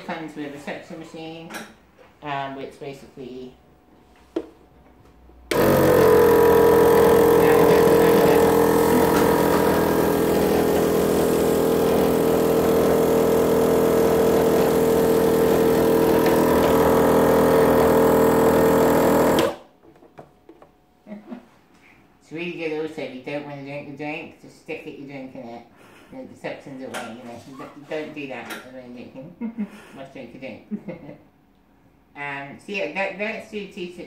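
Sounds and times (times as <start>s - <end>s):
suction pump motor humming: 5.5s - 19.7s.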